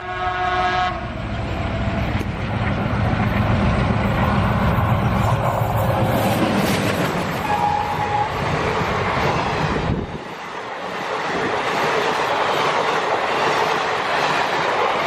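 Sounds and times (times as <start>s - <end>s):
train horn: 0.0s - 2.1s, 7.3s - 8.4s
running train rumble: 0.0s - 15.0s.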